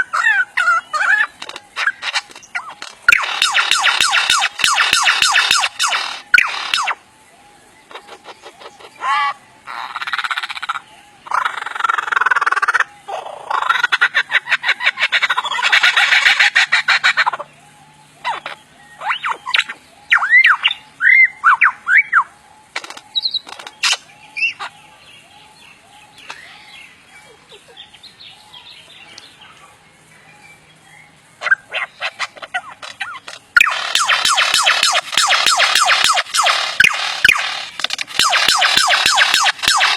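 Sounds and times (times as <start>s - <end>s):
bird harsh calls: 0.0s - 39.9s
bird whistled notes: 0.6s - 7.0s, 18.2s - 22.3s, 38.2s - 39.9s.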